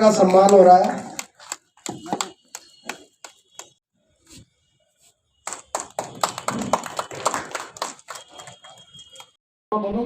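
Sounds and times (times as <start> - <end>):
audience applauding: 5.5 - 9.4.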